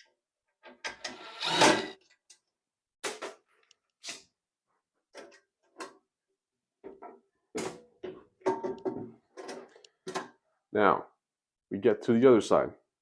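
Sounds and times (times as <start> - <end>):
rasping scrape: 0.9 - 2.0.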